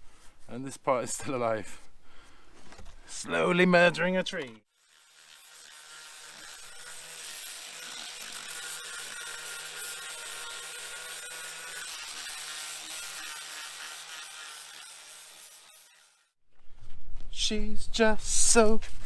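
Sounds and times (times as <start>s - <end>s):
power tool working wood: 4.7s - 16.4s.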